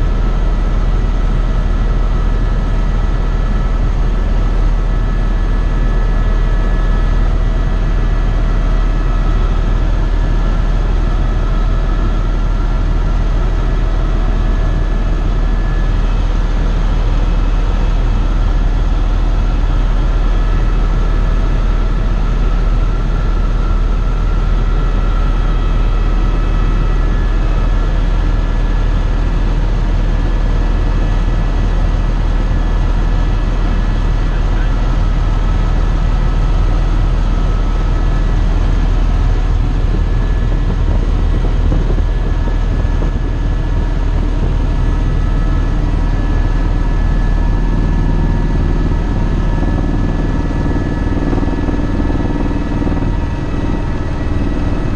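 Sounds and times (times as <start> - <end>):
helicopter rotor and turbine noise: 0.0 - 54.9.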